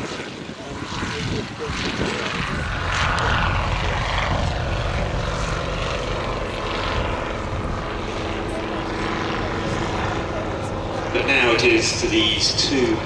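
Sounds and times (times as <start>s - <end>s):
propeller aircraft flying by: 0.0s - 13.0s.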